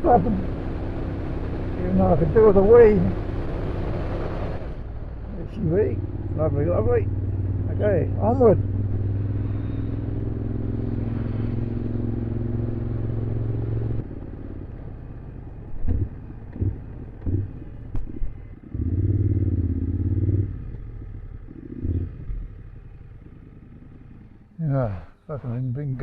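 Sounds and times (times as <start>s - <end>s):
motorcycle engine running: 0.0s - 24.6s
knocks and clatter: 15.7s - 18.6s.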